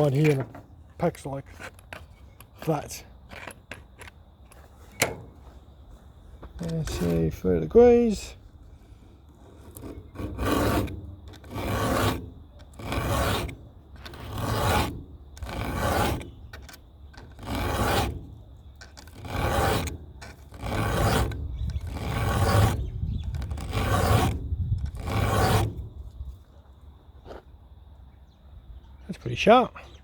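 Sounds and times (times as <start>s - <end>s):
file rasping on chainsaw chain: 9.6s - 25.9s.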